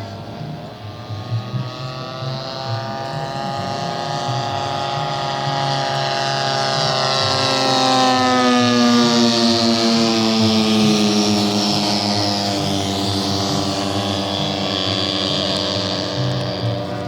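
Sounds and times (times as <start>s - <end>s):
model airplane engine and propeller: 0.0s - 17.0s.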